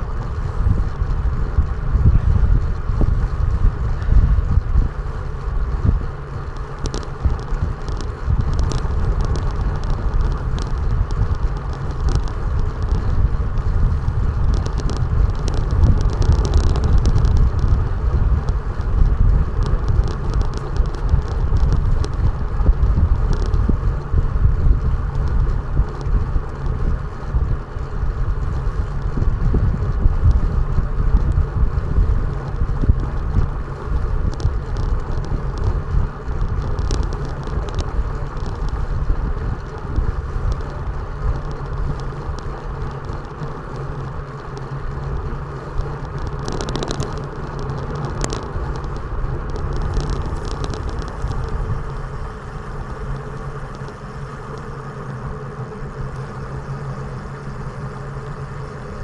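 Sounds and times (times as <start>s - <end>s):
light crackles: 0.0s - 59.0s
low road rumble: 0.0s - 59.0s
wind buffeting microphone: 0.0s - 59.0s.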